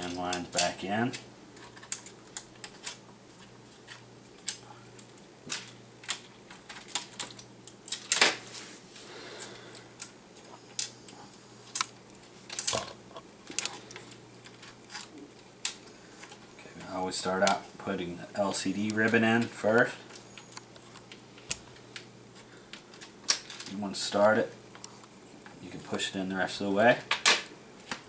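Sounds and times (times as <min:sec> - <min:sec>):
small parts clicking and tapping: 0:00.0 - 0:08.3, 0:09.7 - 0:17.6, 0:18.8 - 0:23.8.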